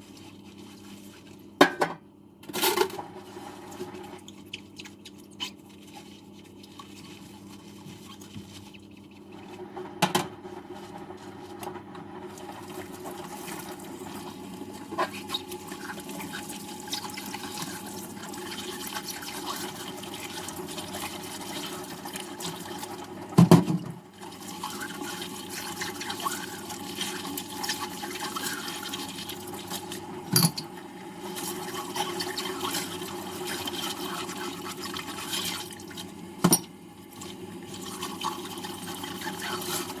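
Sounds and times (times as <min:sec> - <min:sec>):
dishes knocking against sink: 0:01.6 - 0:02.0, 0:23.4 - 0:24.0
water running into sink: 0:12.3 - 0:40.0.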